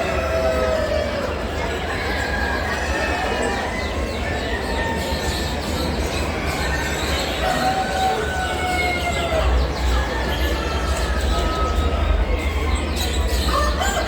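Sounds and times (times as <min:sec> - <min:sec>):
roosters crowing: 0:00.0 - 0:05.2, 0:07.3 - 0:14.0
chickens clucking: 0:06.4 - 0:14.0.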